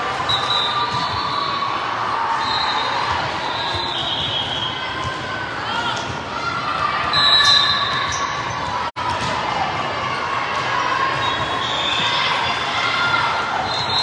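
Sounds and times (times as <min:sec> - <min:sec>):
people chattering and calling: 0:00.0 - 0:14.0
ball bouncing on hard court: 0:00.9 - 0:01.5.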